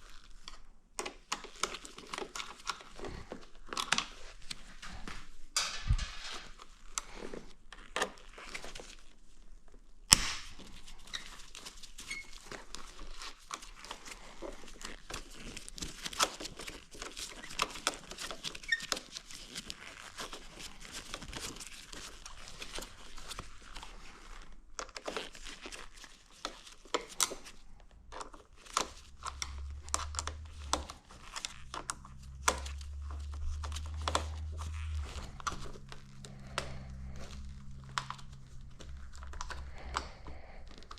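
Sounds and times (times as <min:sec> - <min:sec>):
low hum: 0:29.0 - 0:40.9.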